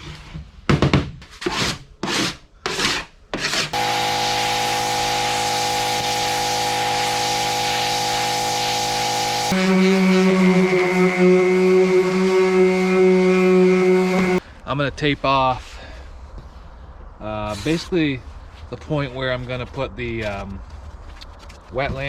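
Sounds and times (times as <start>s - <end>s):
rubbing strokes on metal hull: 3.4s - 14.4s.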